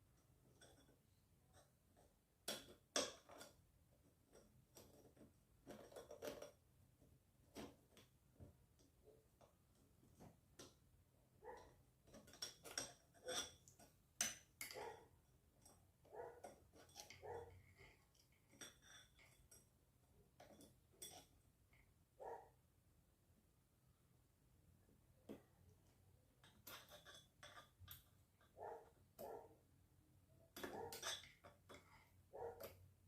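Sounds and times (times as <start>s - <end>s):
small parts clicking and clinking: 12.0s - 14.9s, 26.4s - 28.6s, 30.5s - 33.0s.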